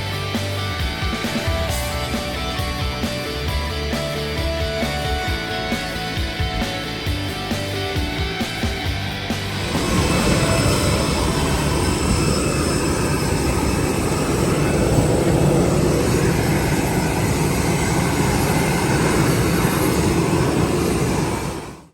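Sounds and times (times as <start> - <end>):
vehicle rumbling in motion: 8.9 - 21.6.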